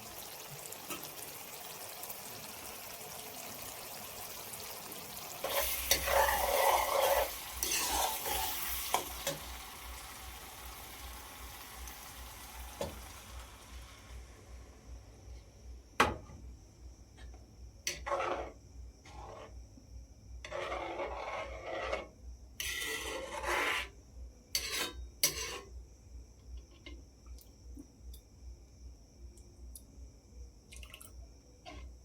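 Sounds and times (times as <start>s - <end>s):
food sizzling in hot oil: 0.0s - 15.0s.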